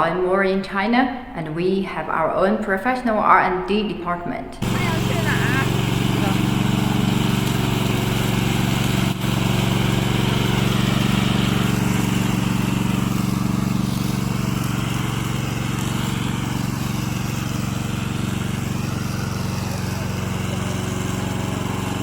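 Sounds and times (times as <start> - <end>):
petrol lawn mower engine running: 4.6 - 22.0.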